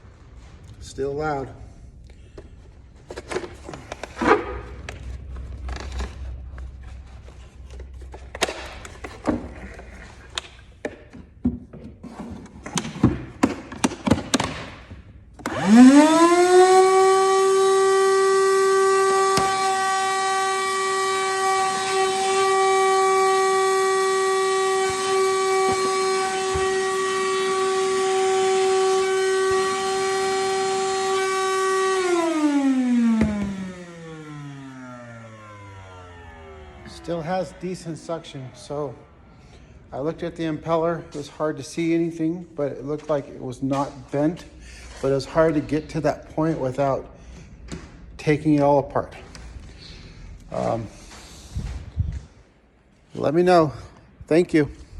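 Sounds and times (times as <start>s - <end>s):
vacuum motor whine: 15.4s - 40.3s.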